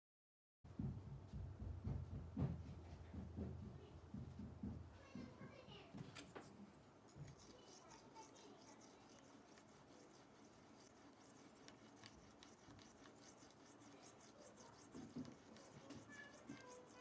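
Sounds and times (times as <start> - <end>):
hand rubbing metal: 6.1 - 17.0.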